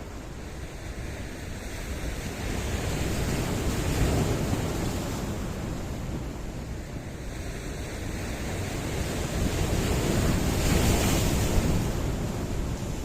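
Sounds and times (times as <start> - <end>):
wind on microphone: 0.0 - 13.0
surf washing against rocks: 7.4 - 13.0.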